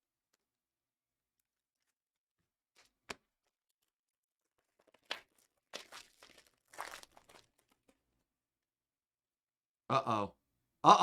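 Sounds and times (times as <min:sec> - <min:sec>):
wrapper tearing and crinkling: 0:04.6 - 0:07.8.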